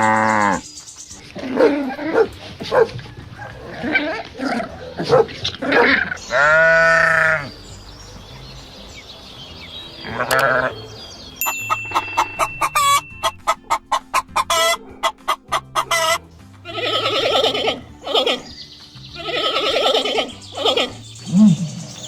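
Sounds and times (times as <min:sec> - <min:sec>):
chickens clucking: 0:01.2 - 0:07.6, 0:11.7 - 0:22.0
chicken drawn-out call: 0:11.9 - 0:18.6, 0:19.2 - 0:22.0.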